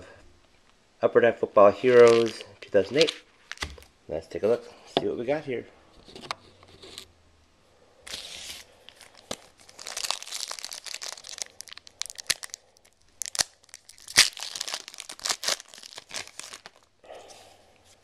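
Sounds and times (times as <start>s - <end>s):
wrapper rustling and crackling: 1.8s - 3.9s, 8.1s - 16.9s.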